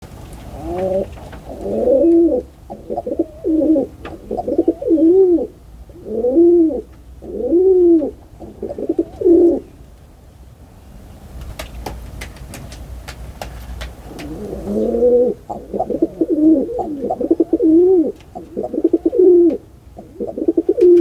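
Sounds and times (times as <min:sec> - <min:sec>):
pigeons cooing: 0:00.5 - 0:09.7, 0:14.0 - 0:21.0.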